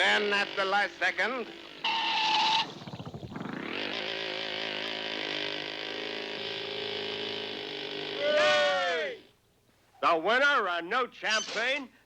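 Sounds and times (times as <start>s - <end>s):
cartoon racing engine revving: 0.0s - 9.2s.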